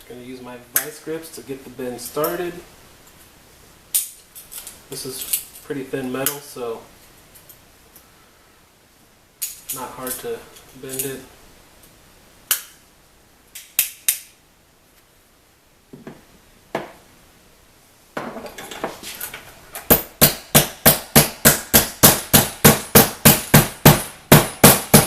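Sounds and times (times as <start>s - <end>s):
hammer striking sheet metal: 19.9s - 25.0s.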